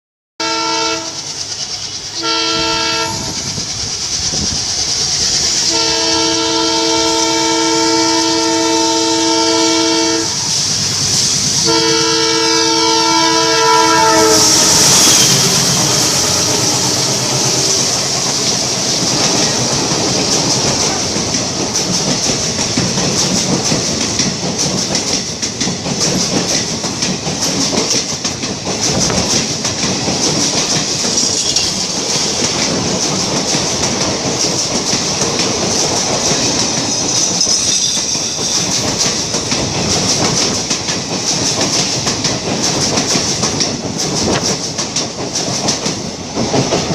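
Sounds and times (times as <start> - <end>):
locomotive horn blasts: 0.4 - 1.2, 2.2 - 3.4, 5.7 - 10.4, 11.6 - 17.1
train wheels clacking over rail joints: 0.4 - 46.9.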